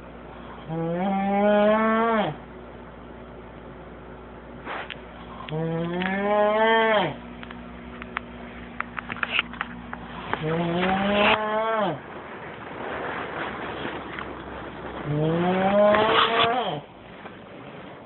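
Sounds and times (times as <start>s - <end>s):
person snoring with bleating moan: 0.6s - 2.4s, 5.4s - 7.2s.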